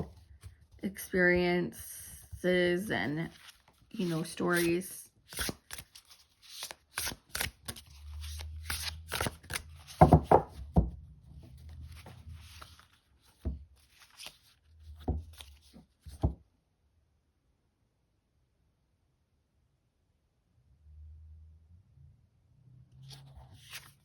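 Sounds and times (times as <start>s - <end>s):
cards being shuffled: 2.8s - 10.8s, 11.4s - 16.4s, 23.0s - 24.0s.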